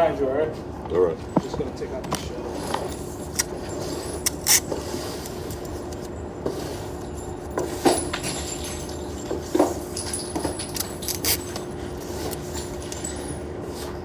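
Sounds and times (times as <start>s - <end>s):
cartridges clicking and clinking: 2.7s - 6.1s, 9.9s - 13.1s.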